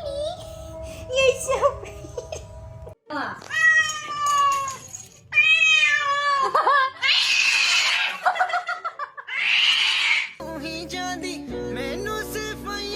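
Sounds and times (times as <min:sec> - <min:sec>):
cat yowling: 0:03.5 - 0:08.2, 0:09.3 - 0:10.4
cat hissing: 0:07.0 - 0:08.2, 0:09.3 - 0:10.4.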